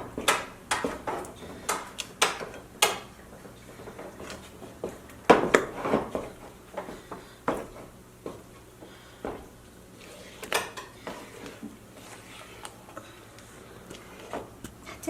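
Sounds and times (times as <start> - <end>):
wooden stick scraping metal pot: 11.3 - 13.0.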